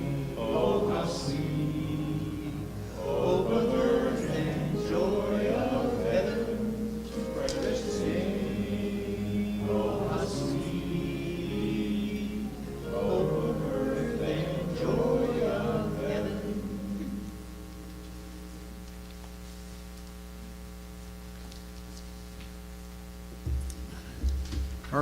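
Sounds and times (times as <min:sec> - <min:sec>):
congregation singing a hymn: 0:00.0 - 0:18.6.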